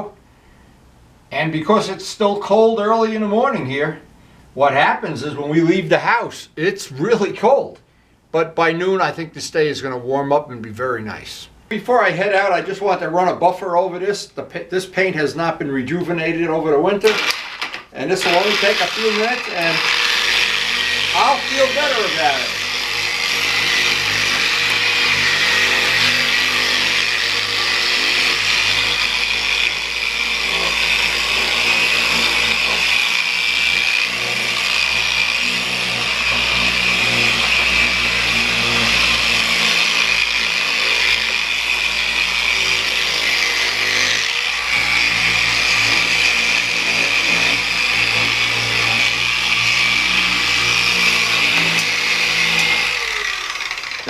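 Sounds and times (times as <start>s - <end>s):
electric polishing buffer whining: 17.0s - 54.0s.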